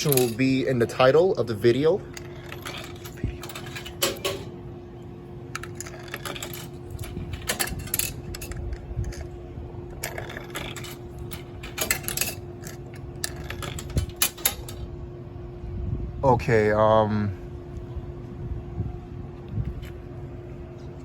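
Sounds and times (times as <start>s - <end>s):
coins clinking into machine: 0.0s - 0.6s, 2.1s - 4.6s, 5.6s - 9.3s, 9.9s - 14.8s
vending machine hum: 0.0s - 21.0s.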